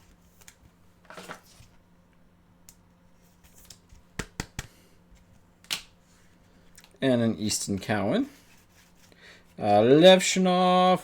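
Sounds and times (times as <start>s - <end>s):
cards sliding and rustling: 0.0s - 1.8s.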